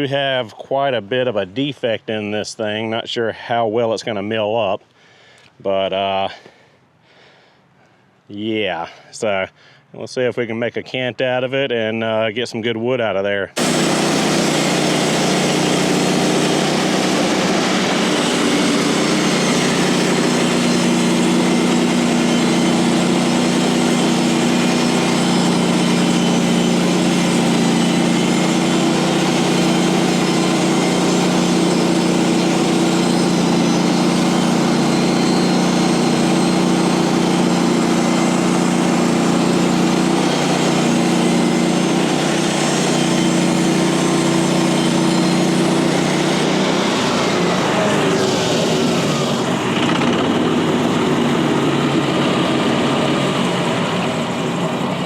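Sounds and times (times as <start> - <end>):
bandsaw blade sawing log: 13.6 - 54.9
small gasoline engine running: 13.6 - 55.0.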